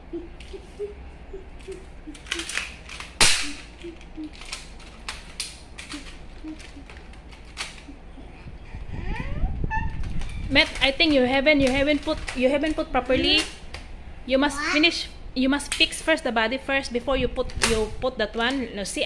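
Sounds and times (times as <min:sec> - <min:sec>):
plastic tiles clicking together: 0:01.6 - 0:08.0.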